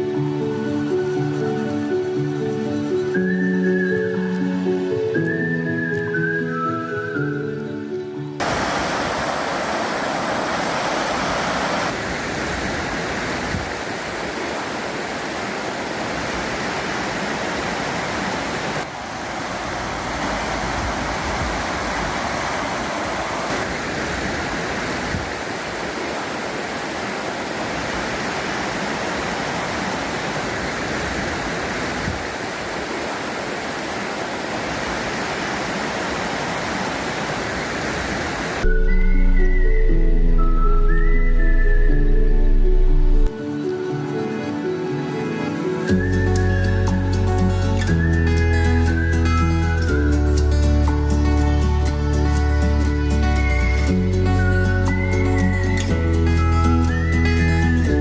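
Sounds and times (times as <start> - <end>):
steady rushing noise: 8.4 - 38.7.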